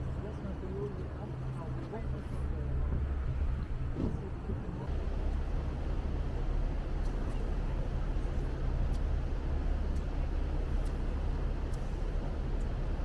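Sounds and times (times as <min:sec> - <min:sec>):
boat engines droning: 0:04.8 - 0:13.0
wind and water rushing: 0:04.9 - 0:13.0.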